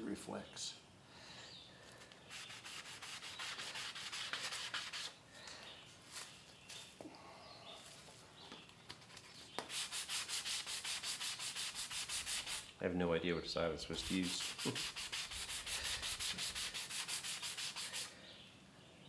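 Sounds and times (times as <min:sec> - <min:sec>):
hand sanding strokes: 0:02.3 - 0:05.2, 0:09.6 - 0:12.7, 0:13.9 - 0:18.2.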